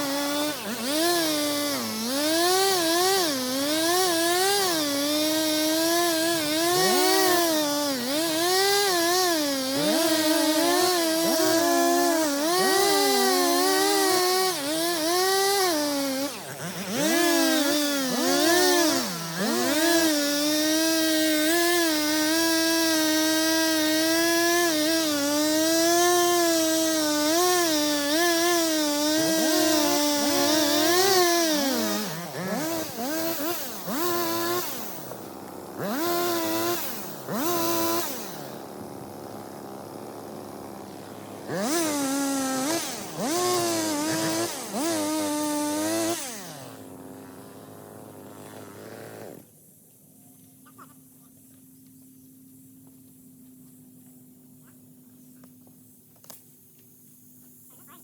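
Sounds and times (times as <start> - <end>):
chainsaw engine revving: 0.0 - 49.5.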